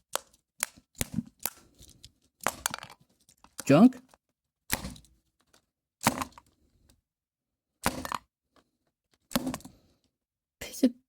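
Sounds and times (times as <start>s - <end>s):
crackling handling noises: 0.1s - 7.0s.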